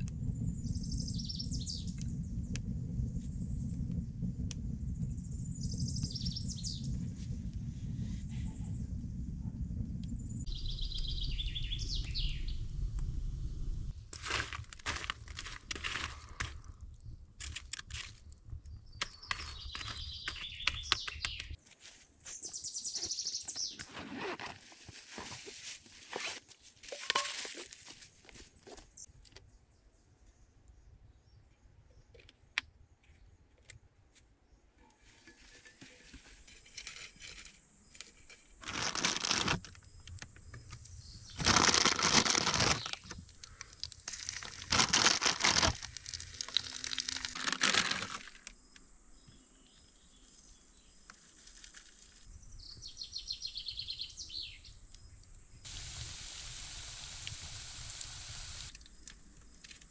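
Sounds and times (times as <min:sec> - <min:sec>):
rustling and tearing: 0:14.1 - 0:16.6, 0:23.7 - 0:29.0, 0:38.6 - 0:39.8, 0:41.4 - 0:48.5.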